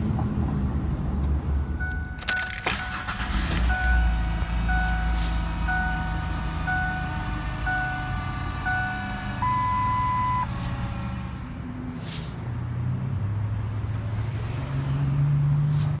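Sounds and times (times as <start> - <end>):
short beeps: 1.6 - 10.6
low steady rumble: 1.6 - 11.6
long higher beep: 2.8 - 10.5.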